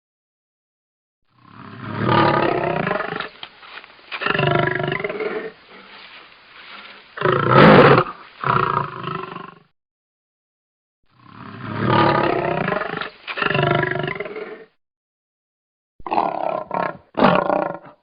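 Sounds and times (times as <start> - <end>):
big cat roaring: 1.4 - 3.4, 7.2 - 9.6, 11.2 - 14.7, 16.0 - 18.0.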